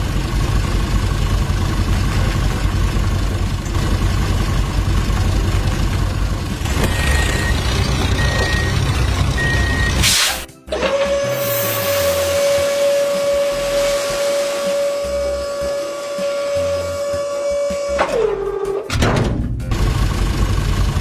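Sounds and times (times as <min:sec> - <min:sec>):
truck engine running: 0:00.0 - 0:18.0, 0:19.6 - 0:21.0
reversing beeps: 0:06.9 - 0:10.1
brief rushing noise: 0:10.0 - 0:10.5, 0:11.2 - 0:17.0.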